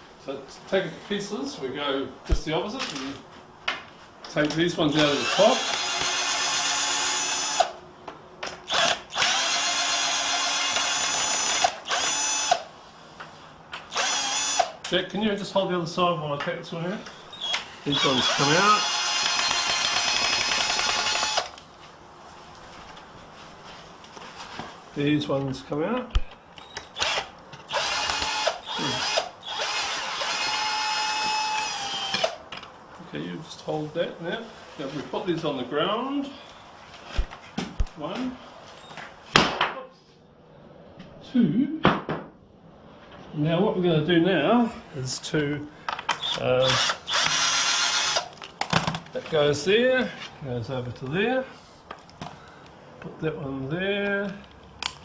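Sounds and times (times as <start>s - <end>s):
electric drill-driver whining: 4.9s - 7.8s, 8.7s - 12.7s, 13.9s - 14.8s, 17.3s - 21.6s, 27.0s - 32.4s, 46.2s - 48.4s.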